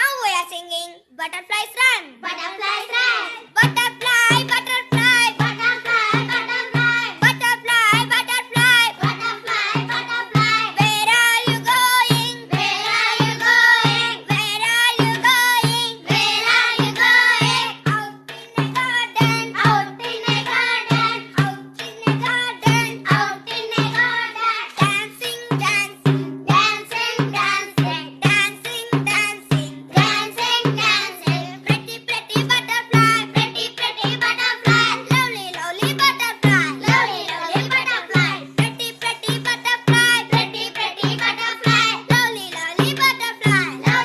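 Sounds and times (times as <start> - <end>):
steady beat: 2.3 - 44.0.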